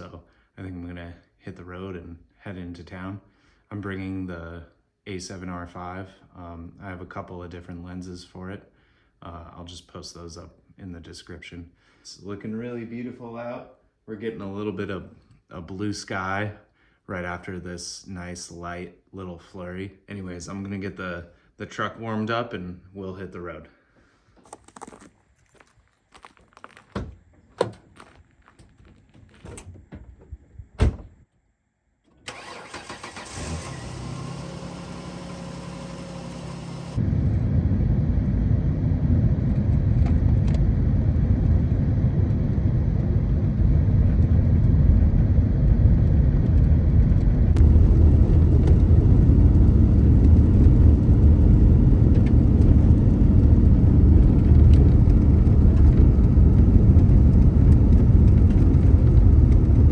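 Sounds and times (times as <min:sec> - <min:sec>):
truck engine starting and idling: 0:32.2 - 0:40.3, 0:47.5 - 0:59.9
engine and road noise driving: 0:32.2 - 0:59.9.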